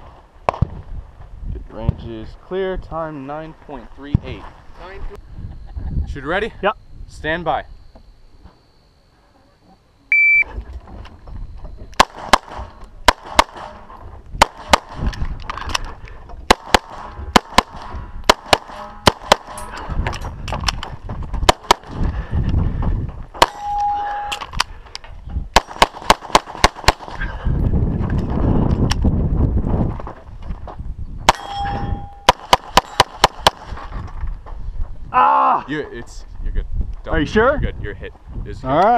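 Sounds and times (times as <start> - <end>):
brief ringing tone: 10.1 - 10.5, 23.5 - 24.4, 31.4 - 32.3
shot timer beep: 10.1 - 10.5
pistol shots: 12.0 - 13.8, 14.4 - 15.2, 16.5 - 19.6, 21.4 - 22.0, 25.5 - 27.2, 32.2 - 33.7.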